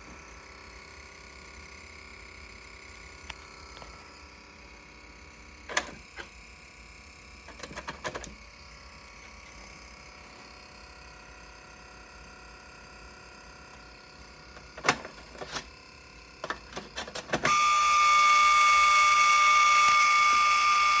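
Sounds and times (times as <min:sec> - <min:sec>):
floppy drive clicking and rattling: 0:05.4 - 0:06.6, 0:07.3 - 0:10.0, 0:13.6 - 0:17.6.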